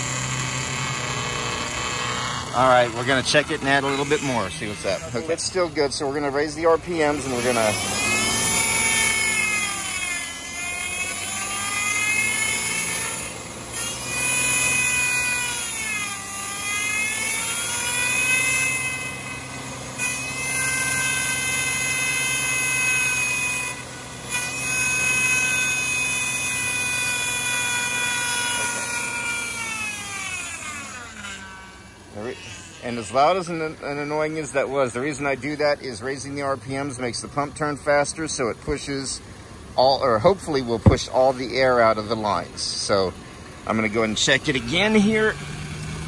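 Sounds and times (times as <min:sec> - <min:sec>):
car engine revving: 0:00.0 - 0:25.0, 0:25.6 - 0:46.0
power steering pump whining: 0:00.0 - 0:46.0.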